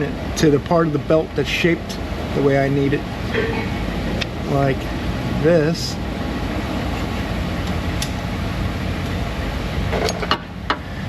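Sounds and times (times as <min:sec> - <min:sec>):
low hum: 0:01.9 - 0:09.9.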